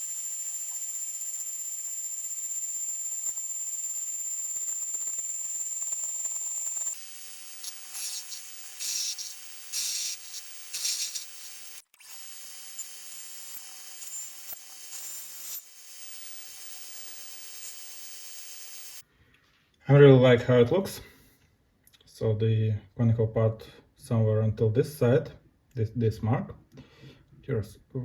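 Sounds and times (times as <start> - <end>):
lathe high whine: 0.0 - 19.0
tool scraping bursts: 2.8 - 19.0.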